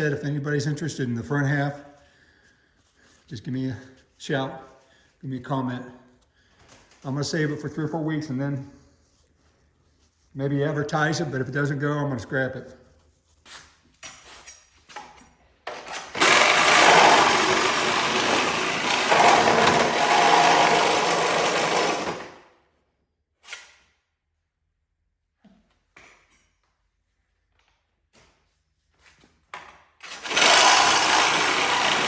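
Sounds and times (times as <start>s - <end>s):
reciprocating saw cutting steel: 16.0s - 22.4s, 30.0s - 32.0s.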